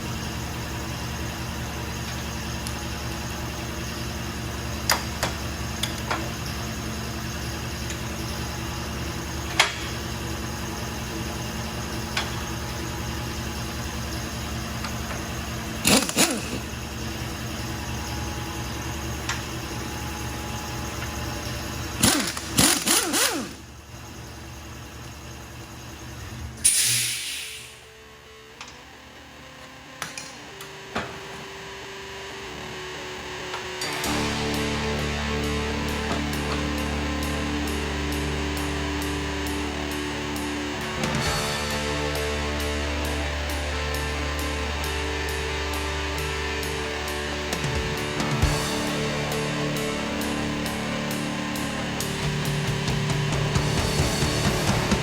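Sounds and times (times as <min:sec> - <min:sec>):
machine hum: 0:00.0 - 0:26.8, 0:27.5 - 0:55.0
short hiss: 0:26.6 - 0:27.8.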